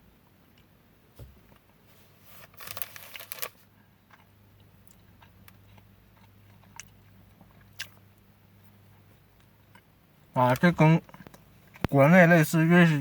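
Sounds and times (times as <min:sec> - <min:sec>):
low steady hum: 0:00.0 - 0:13.0
plastic packaging crinkling: 0:02.3 - 0:03.6.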